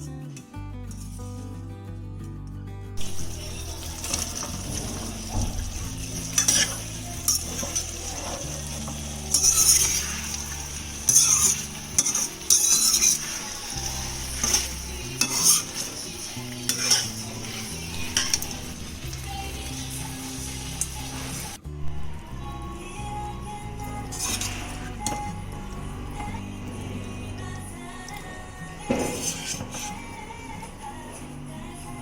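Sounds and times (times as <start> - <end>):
utensil scraping a cooking pan: 3.0 - 21.6, 24.1 - 25.4, 28.9 - 30.2
light sizzle: 3.0 - 22.5, 23.4 - 32.0.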